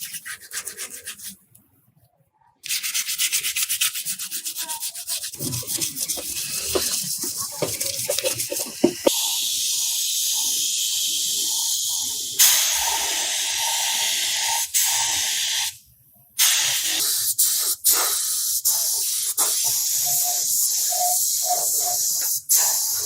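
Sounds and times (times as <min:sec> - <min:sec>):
spray hissing from nozzle: 0:05.4 - 0:15.6.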